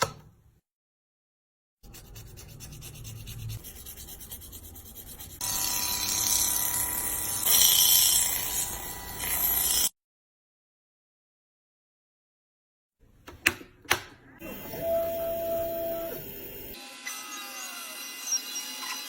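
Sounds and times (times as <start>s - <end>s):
scratchy rubbing and scraping: 1.8s - 5.4s.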